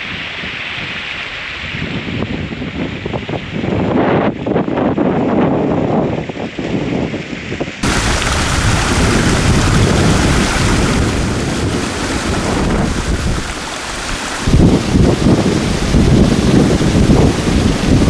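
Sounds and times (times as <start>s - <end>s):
waterfall roaring: 7.8s - 18.0s
wind buffeting the microphone: 7.8s - 18.0s.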